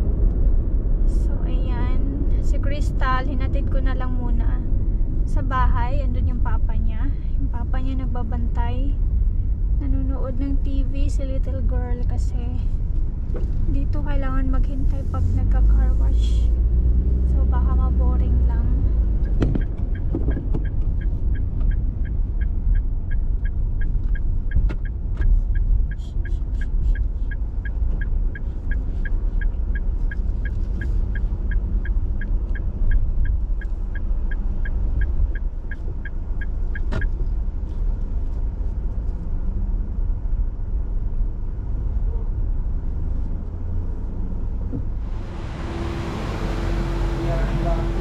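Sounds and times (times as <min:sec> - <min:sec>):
car road rumble: 0:00.0 - 0:48.0
turn signal ticking: 0:07.5 - 0:39.3.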